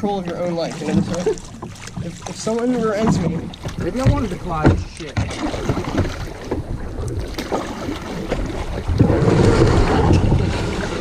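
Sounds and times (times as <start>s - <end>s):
paddling water noise: 0.0s - 11.0s
wind buffeting microphone: 0.0s - 11.0s
scattered knocks: 2.9s - 6.7s.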